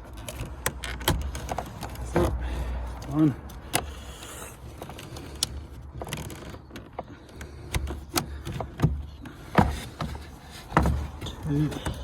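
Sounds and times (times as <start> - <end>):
plastic clicks and knocks: 4.8 - 12.0.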